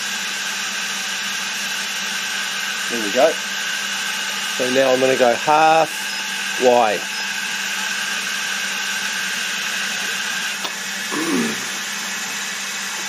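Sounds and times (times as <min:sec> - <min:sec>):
milling machine spindle humming: 0:00.0 - 0:13.0.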